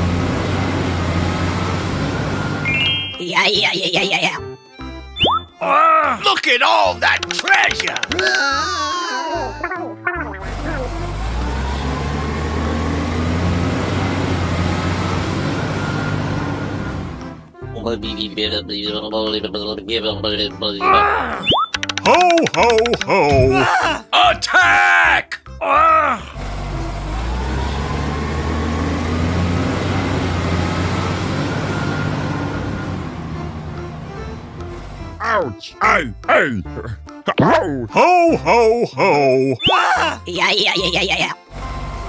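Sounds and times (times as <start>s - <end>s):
large vehicle engine running: 0.0s - 2.7s, 10.0s - 20.2s, 26.4s - 35.2s, 41.1s - 42.0s
road noise: 0.0s - 5.2s, 9.8s - 21.0s, 25.9s - 36.9s, 39.0s - 42.0s.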